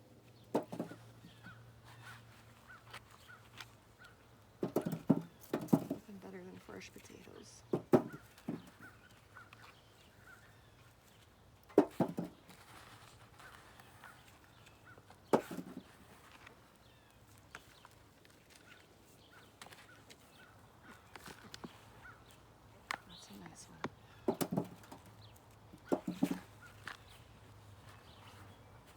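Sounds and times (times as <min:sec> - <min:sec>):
thuds and rustles of digging: 0:00.5 - 0:03.7, 0:04.6 - 0:06.1, 0:07.7 - 0:08.9, 0:11.7 - 0:16.6, 0:22.9 - 0:25.2, 0:25.8 - 0:27.2.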